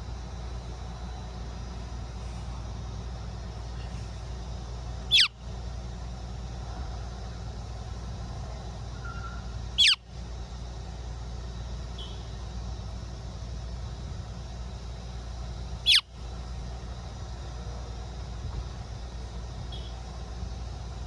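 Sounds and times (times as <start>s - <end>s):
bird squealing calls: 5.1s - 5.3s, 9.8s - 10.0s.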